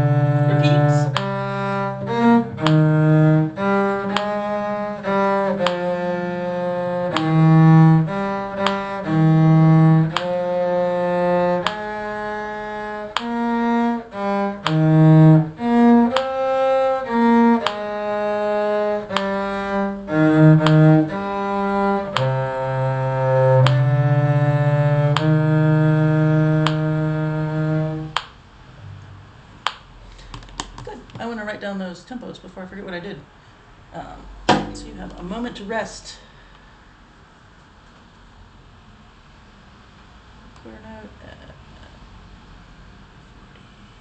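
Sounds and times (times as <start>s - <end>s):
bowed string instruments: 0.0s - 29.8s, 34.5s - 36.0s.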